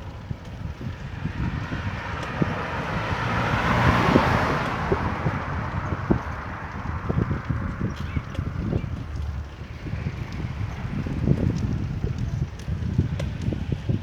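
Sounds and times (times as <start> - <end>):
car driving past: 1.1 - 7.9.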